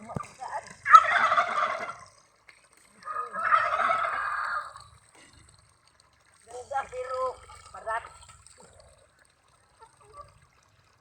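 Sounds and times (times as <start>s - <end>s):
turkey gobbling: 0.1s - 2.2s, 3.0s - 4.8s, 9.7s - 10.4s.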